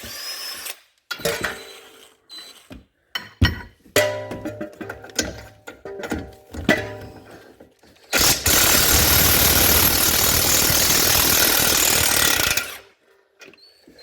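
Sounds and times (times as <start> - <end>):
impact wrench running: 8.2 - 12.8.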